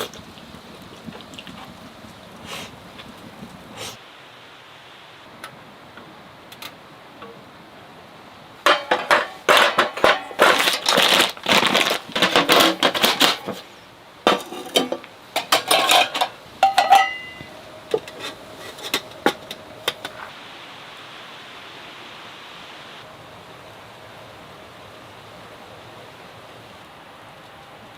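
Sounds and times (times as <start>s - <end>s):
faint steady hiss: 0.0s - 27.9s
metal cookware clattering: 8.6s - 20.3s.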